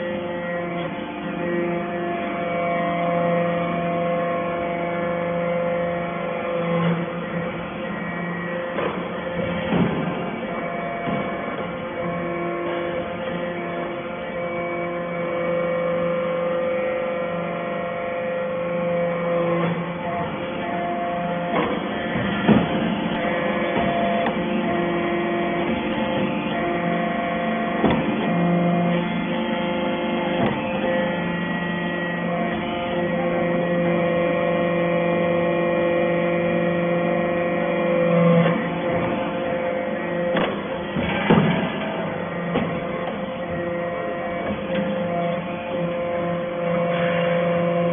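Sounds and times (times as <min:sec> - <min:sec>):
baler machine hum: 0:00.0 - 0:47.9
sharp knocks: 0:21.5 - 0:23.1, 0:27.8 - 0:28.3, 0:40.3 - 0:43.2.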